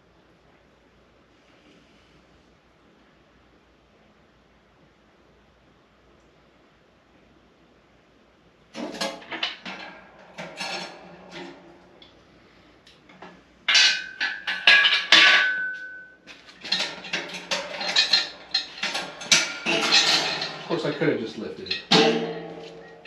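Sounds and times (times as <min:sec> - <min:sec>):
steel parts clanking: 0:08.8 - 0:12.1, 0:13.1 - 0:23.0
loud ringing metal clank: 0:13.7 - 0:23.0.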